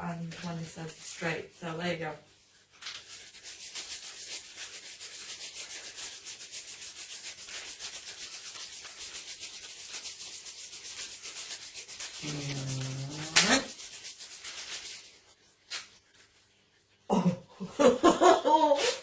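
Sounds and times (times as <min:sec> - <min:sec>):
hand rubbing wax strip on leg: 0:02.6 - 0:16.5.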